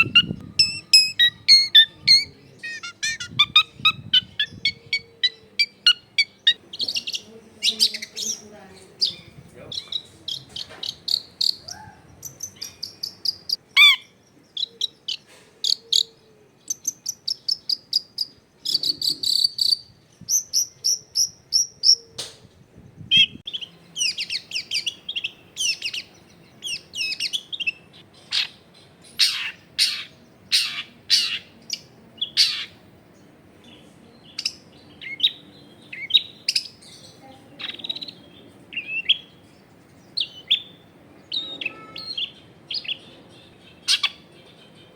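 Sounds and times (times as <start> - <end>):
shrike singing: 0.0 - 22.2.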